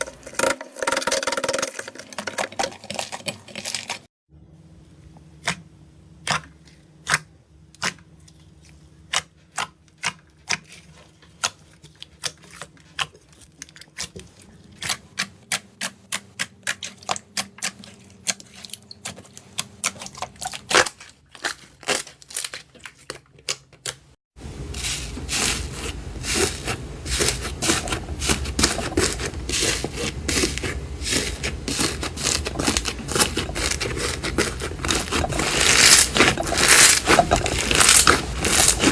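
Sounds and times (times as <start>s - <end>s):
slime squishing with sticky pops: 25.4s - 38.9s.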